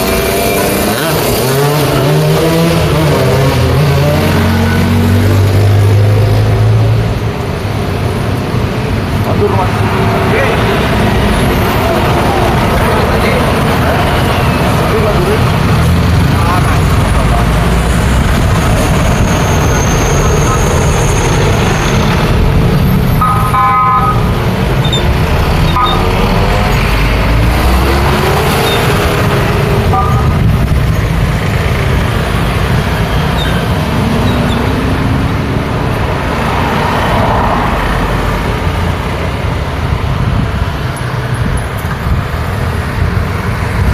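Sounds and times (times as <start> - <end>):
road traffic rumble: 0.0 - 43.9
engines accelerating past: 24.3 - 40.8.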